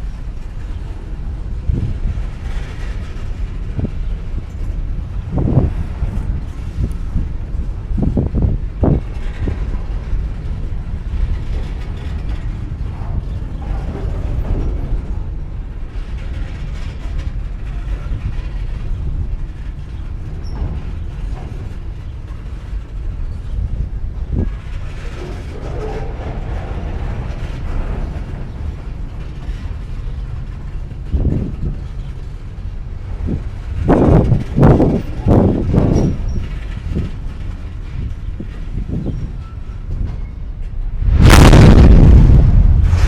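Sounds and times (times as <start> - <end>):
train rumbling on track: 0.0 - 43.0
metal creaks and knocks: 33.2 - 41.2.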